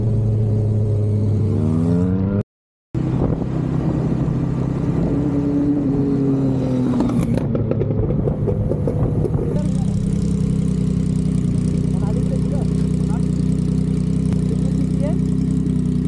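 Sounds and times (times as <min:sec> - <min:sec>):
motorcycle engine revving: 0:00.0 - 0:02.4, 0:03.0 - 0:16.0.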